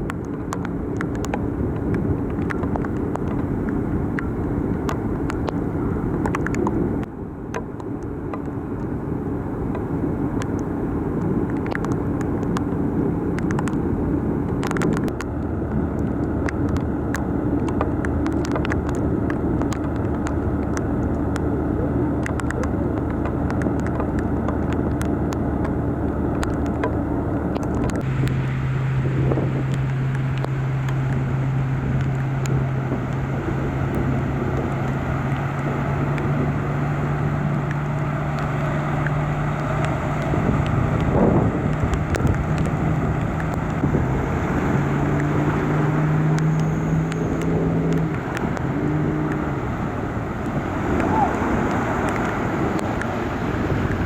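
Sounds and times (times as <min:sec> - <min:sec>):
sharp ticks: 0:00.0 - 0:08.5, 0:09.6 - 0:15.3, 0:15.9 - 0:28.4, 0:31.9 - 0:54.0
noisy wash: 0:00.0 - 0:54.0
vehicle engine running: 0:00.0 - 0:54.0.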